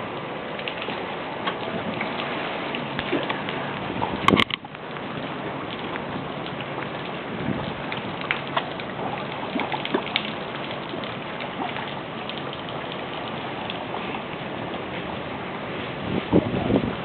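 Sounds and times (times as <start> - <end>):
water drips and splashes: 0.0 - 17.0
water rushing: 0.0 - 17.0.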